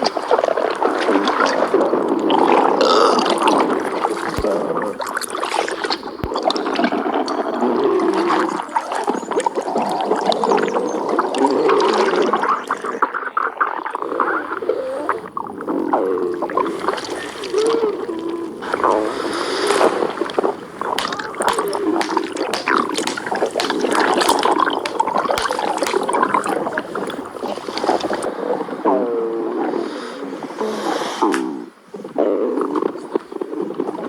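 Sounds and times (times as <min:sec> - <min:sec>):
stomach gurgling: 0:00.3 - 0:12.8, 0:13.8 - 0:28.3.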